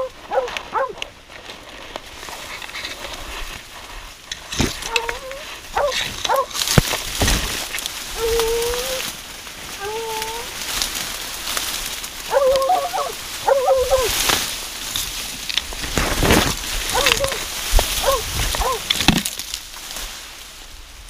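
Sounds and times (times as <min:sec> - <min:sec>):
dogs baying and barking: 0:00.0 - 0:01.2, 0:04.7 - 0:06.6, 0:12.2 - 0:14.2, 0:16.9 - 0:18.9
cracks and rustling: 0:00.0 - 0:20.4.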